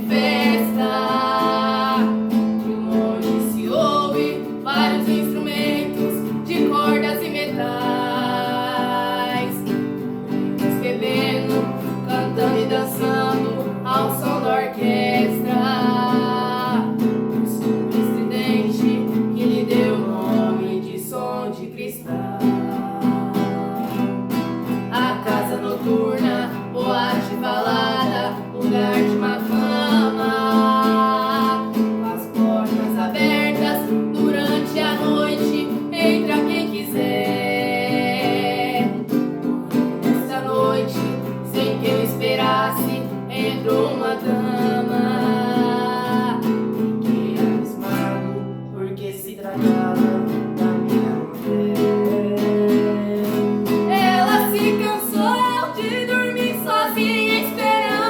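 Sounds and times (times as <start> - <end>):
acoustic guitar strumming: 0.0 - 58.0
plucked string melody: 0.0 - 58.0.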